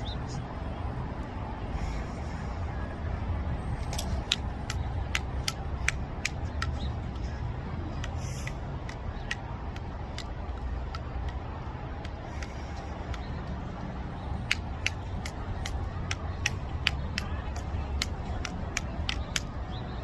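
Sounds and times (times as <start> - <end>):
devil stick clicks: 3.8 - 7.3, 7.9 - 13.6, 14.4 - 19.6.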